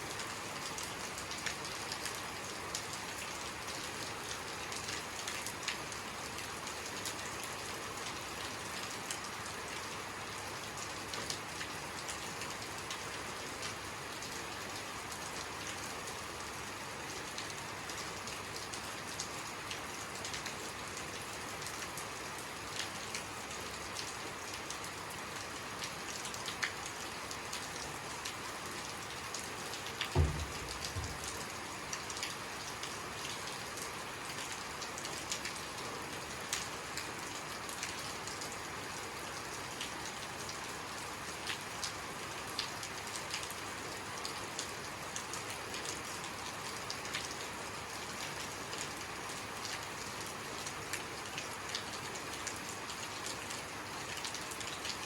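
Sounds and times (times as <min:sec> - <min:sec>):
raindrops ticking: 0:29.3 - 0:32.8
rain hissing: 0:29.4 - 0:32.6.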